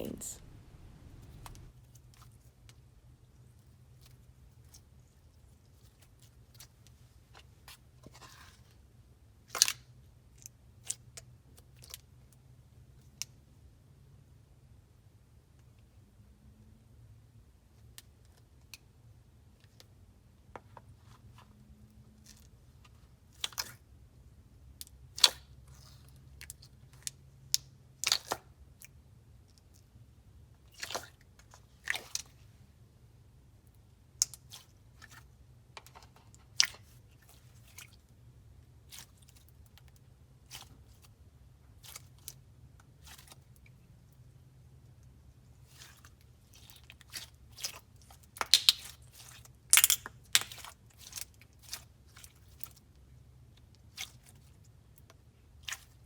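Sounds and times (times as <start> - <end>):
slime sticky pops and clicks: 48.4 - 49.0.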